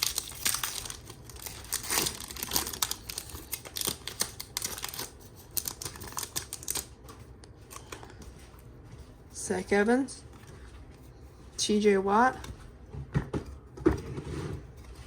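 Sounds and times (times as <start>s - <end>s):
foil wrapper crinkling: 0.0s - 7.0s.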